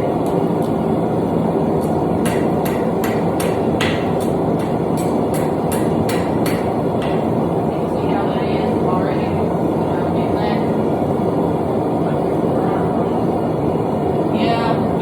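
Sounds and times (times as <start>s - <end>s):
hammer striking steel on anvil: 2.2s - 7.4s.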